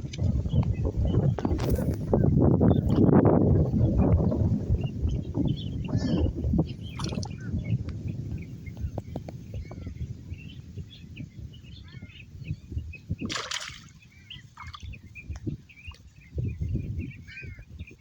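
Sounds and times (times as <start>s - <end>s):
birds chirping: 0.2s - 18.0s
water splash: 6.9s - 7.4s, 13.2s - 14.0s.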